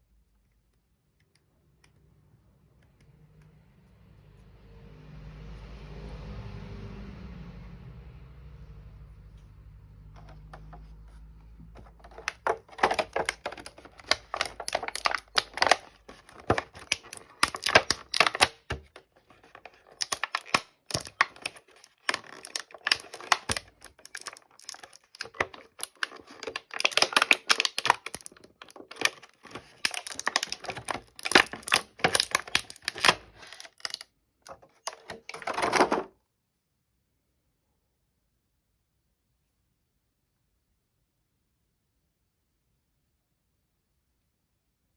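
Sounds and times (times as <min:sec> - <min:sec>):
plastic and cardboard packaging crinkling: 0:11.7 - 0:36.1.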